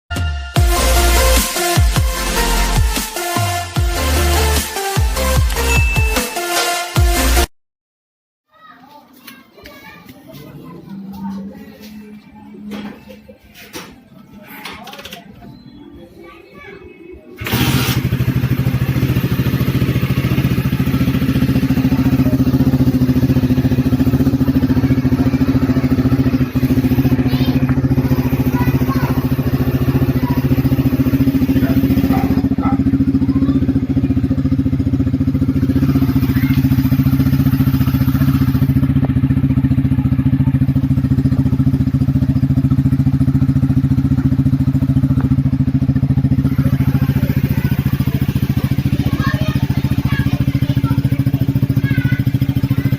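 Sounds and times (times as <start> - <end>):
motorcycle engine idling: 17.4 - 52.9.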